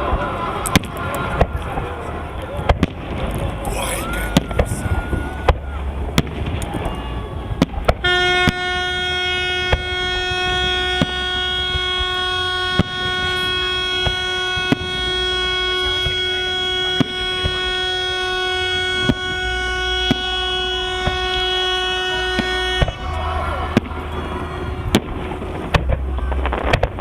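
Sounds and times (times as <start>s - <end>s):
fireworks bangs: 0.0s - 27.0s
horn long steady note: 6.9s - 27.0s.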